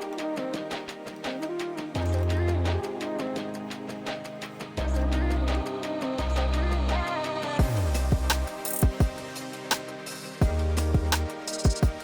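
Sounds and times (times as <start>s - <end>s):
music with heavy bass line: 4.8s - 12.0s.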